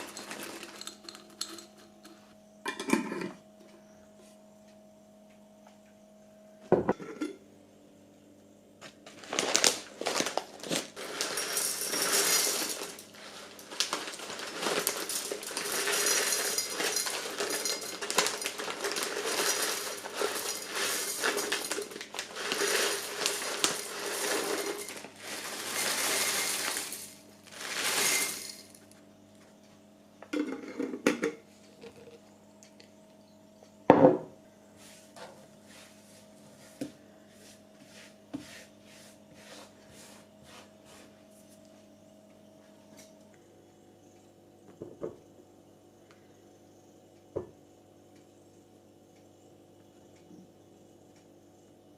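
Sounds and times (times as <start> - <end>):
objects rustling and clinking: 0.0 - 3.4, 9.0 - 29.1.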